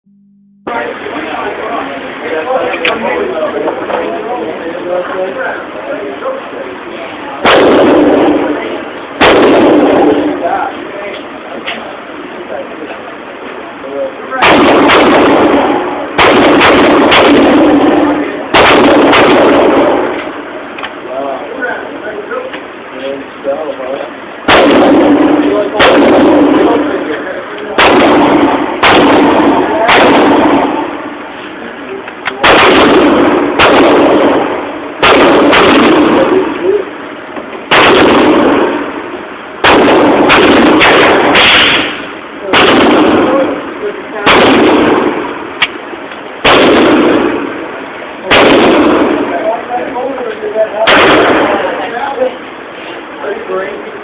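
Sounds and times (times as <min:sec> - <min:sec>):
loud gunshots ringing: 0:07.4 - 0:10.7, 0:14.3 - 0:20.6, 0:24.4 - 0:31.2, 0:32.3 - 0:52.2
rifle shots with echo: 0:07.4 - 0:10.7, 0:14.4 - 0:21.0, 0:24.4 - 0:31.2, 0:32.3 - 0:36.9, 0:37.6 - 0:49.7, 0:50.7 - 0:51.9.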